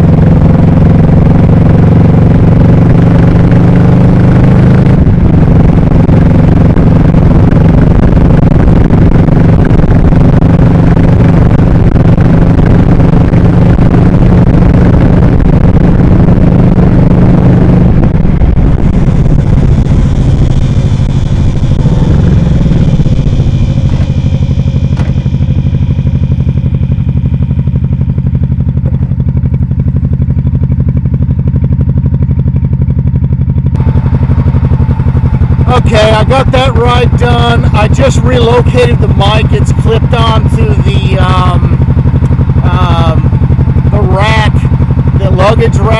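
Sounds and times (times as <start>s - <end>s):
motorcycle engine running: 0.0s - 45.9s
wind rushing noise: 13.3s - 26.6s.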